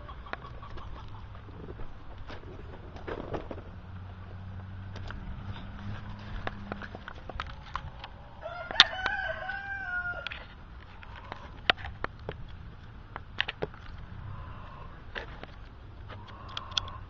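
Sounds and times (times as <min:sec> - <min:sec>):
rooster crowing: 0:08.2 - 0:10.4.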